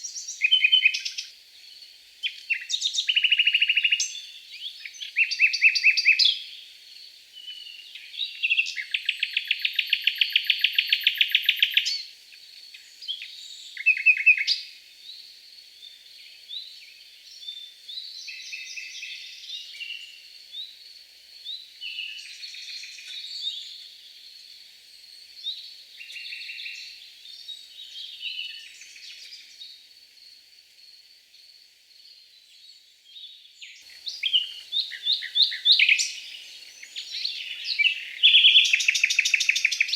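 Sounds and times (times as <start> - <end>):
songbirds chirping: 0.0 - 39.9
bird rapid trill: 34.0 - 39.9.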